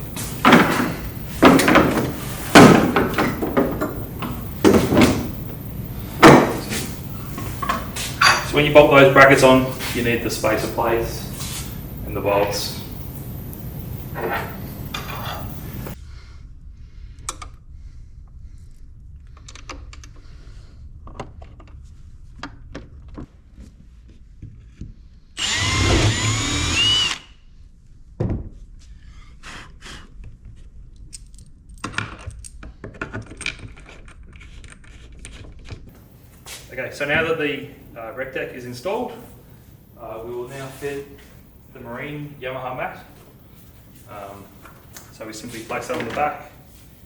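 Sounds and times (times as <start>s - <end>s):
power drill driving a bolt: 25.4s - 27.3s.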